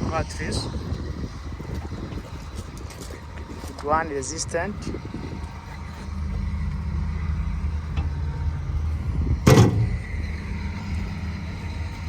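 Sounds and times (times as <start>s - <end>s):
diesel engine idling: 0.0s - 12.0s
loud bang of door shutting: 9.4s - 10.0s.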